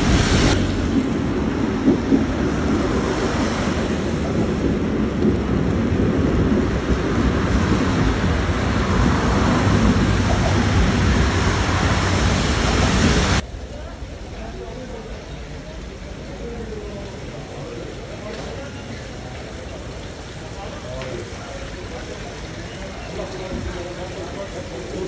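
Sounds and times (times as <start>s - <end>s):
wind buffeting microphone: 0.0s - 13.4s
rain and wind rushing: 0.0s - 25.0s.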